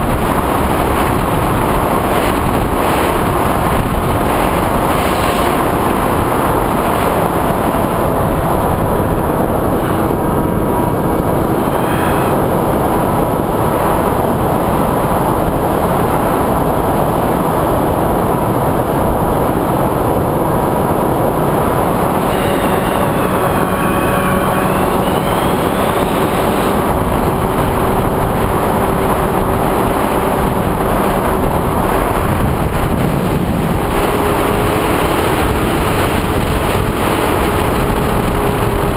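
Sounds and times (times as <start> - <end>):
quadcopter propeller and wind rush: 0.0 - 38.9
motor whine: 21.7 - 30.0.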